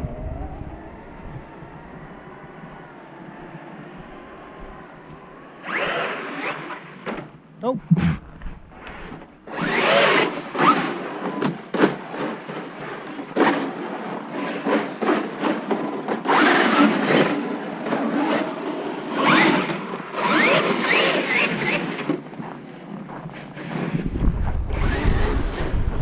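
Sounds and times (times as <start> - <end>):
tyres churning through snow: 0.0 - 7.0, 7.9 - 26.0
electric motors whining: 0.0 - 7.5, 8.2 - 22.2, 23.5 - 26.0.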